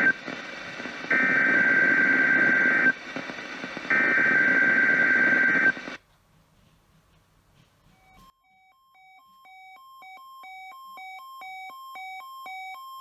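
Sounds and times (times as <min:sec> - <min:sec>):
radio static: 0:00.0 - 0:06.0.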